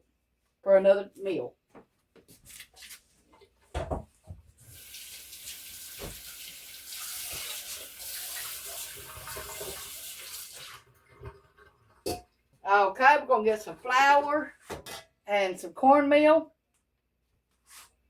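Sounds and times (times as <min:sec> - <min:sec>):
faucet running into sink: 0:04.7 - 0:12.1.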